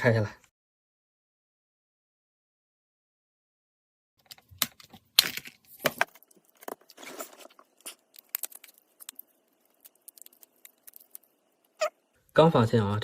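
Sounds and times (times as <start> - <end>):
plastic phone being taken apart: 4.2 - 8.8.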